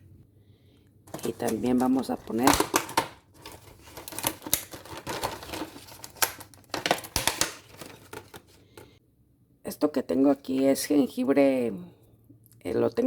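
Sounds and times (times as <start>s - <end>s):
clicks and taps of kitchen items: 1.1s - 8.9s.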